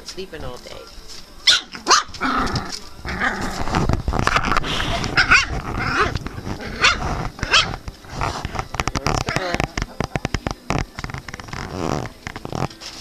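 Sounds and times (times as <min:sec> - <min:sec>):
puppies yelping and whining: 0:04.8 - 0:07.9.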